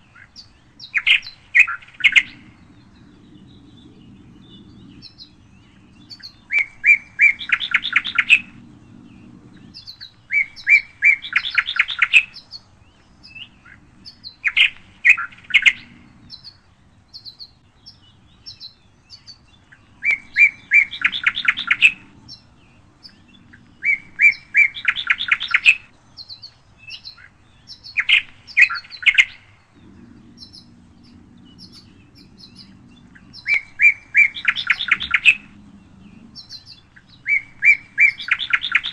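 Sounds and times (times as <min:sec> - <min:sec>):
bird song with trill: 0:00.0 - 0:38.9.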